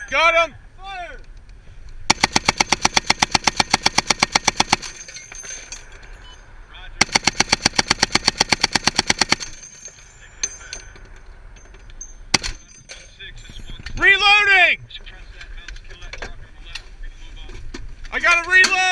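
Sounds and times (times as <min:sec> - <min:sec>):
machine gun bursts: 0:02.1 - 0:05.1, 0:07.0 - 0:09.8, 0:12.3 - 0:12.7.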